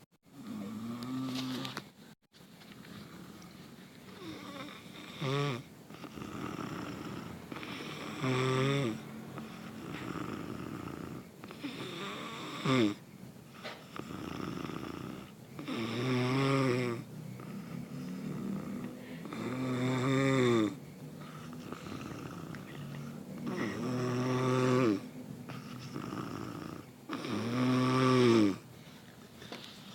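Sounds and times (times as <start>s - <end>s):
person snoring loudly: 0.4s - 1.7s, 4.1s - 13.0s, 13.6s - 28.6s
quiet breathing: 17.0s - 27.4s, 28.5s - 29.9s.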